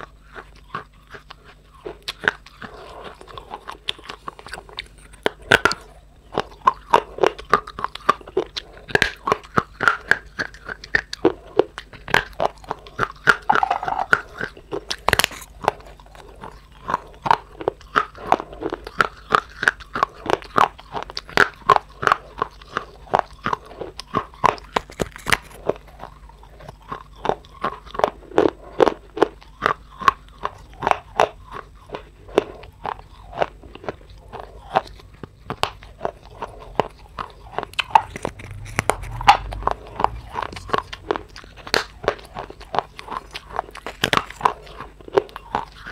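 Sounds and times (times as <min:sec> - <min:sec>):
crunchy clay chewing: 0:00.0 - 0:45.9.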